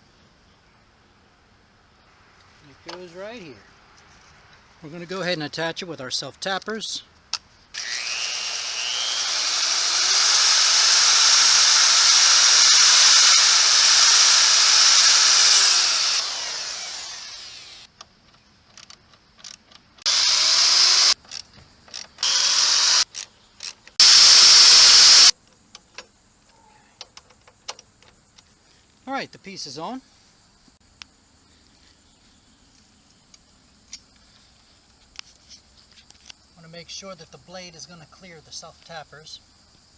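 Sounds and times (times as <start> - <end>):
power drill driving screws into metal: 7.8 - 17.9, 20.0 - 21.2, 21.9 - 23.3, 24.0 - 25.3
small clicks: 18.0 - 20.1.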